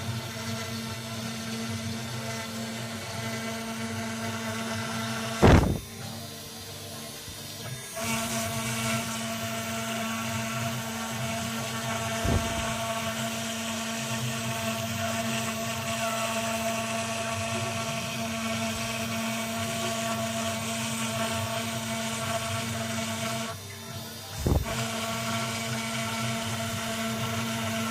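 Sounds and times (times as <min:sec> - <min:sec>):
router spindle high whine: 0:00.0 - 0:27.9
low knock: 0:12.3 - 0:12.8
bit cutting wood hiss: 0:24.2 - 0:24.9.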